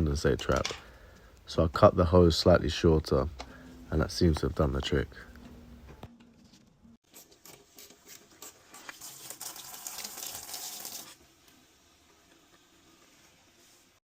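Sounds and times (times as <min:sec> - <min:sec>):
water running and trickling: 0:08.4 - 0:13.9.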